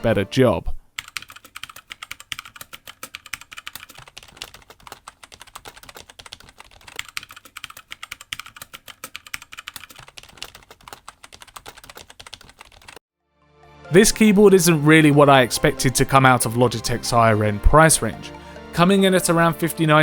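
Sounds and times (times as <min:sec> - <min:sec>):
fast keyboard typing: 0:01.0 - 0:13.0.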